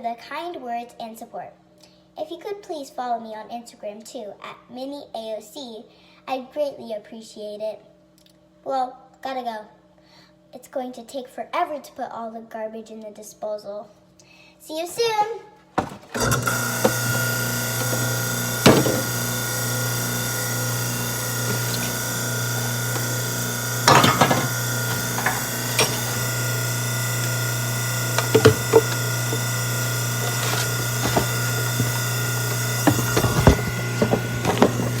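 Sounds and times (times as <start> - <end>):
garbage disposal motor hum: 15.8 - 35.0
grinding knocks and rattles: 15.8 - 35.0.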